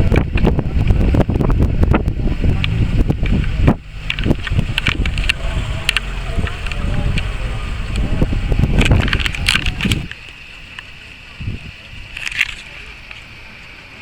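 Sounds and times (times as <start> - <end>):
wind buffeting microphone: 0.0 - 12.4
sharp clicks and knocks: 2.6 - 10.2.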